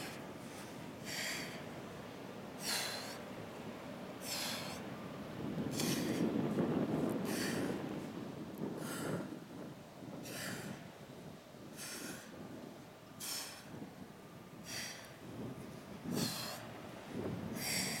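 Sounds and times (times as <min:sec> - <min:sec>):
woman exhaling forcefully: 0:17.6 - 0:18.0.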